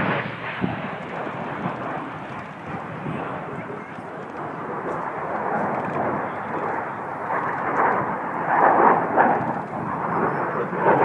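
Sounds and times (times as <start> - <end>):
jet engine rushing: 0.0 - 11.0.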